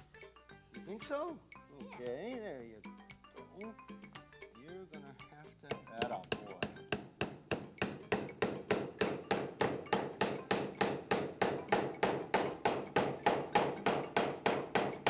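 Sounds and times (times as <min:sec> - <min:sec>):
hammer driving nails into wood: 0:06.0 - 0:15.0.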